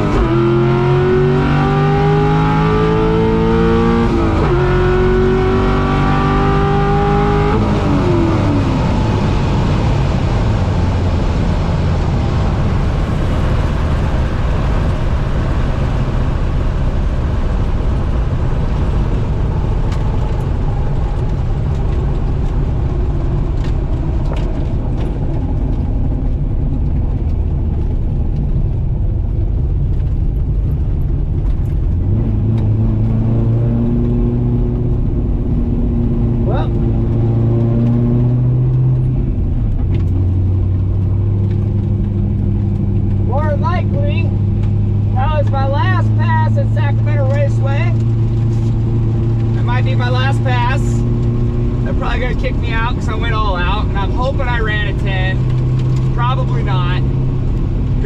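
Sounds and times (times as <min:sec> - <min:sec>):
car rolling rumble: 0:00.0 - 0:58.0.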